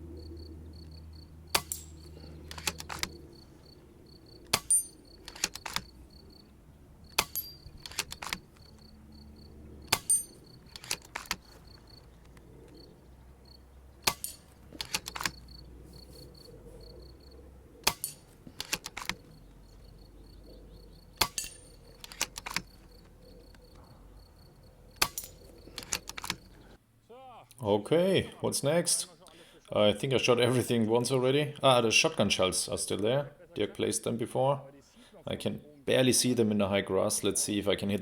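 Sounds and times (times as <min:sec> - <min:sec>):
air rifle shots: 0:01.5 - 0:03.2, 0:04.5 - 0:06.0, 0:07.1 - 0:08.5, 0:09.9 - 0:11.6, 0:14.0 - 0:15.4, 0:17.8 - 0:19.3, 0:21.2 - 0:22.7, 0:25.0 - 0:26.5
rifle action clicks: 0:01.6 - 0:03.2, 0:04.4 - 0:06.0, 0:07.1 - 0:08.9, 0:09.9 - 0:12.9, 0:14.0 - 0:15.6, 0:17.8 - 0:19.5, 0:21.2 - 0:23.9, 0:25.0 - 0:26.7.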